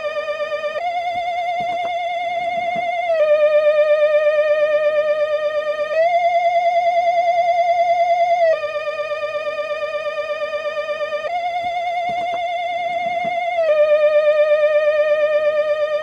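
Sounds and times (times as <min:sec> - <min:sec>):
eerie theremin-like electronic tone: 0:00.0 - 0:16.0.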